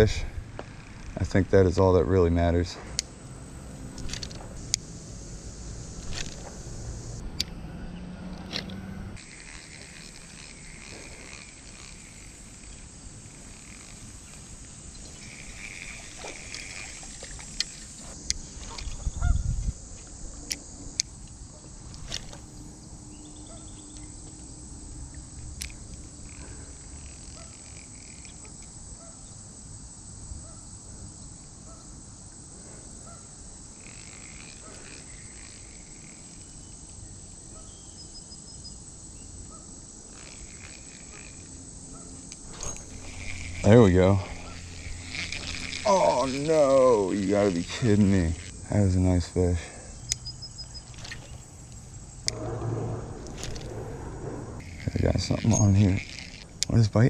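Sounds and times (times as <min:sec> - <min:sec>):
high-pitched insect buzzing: 0:00.0 - 0:01.9, 0:03.4 - 0:07.2, 0:08.4 - 0:57.0.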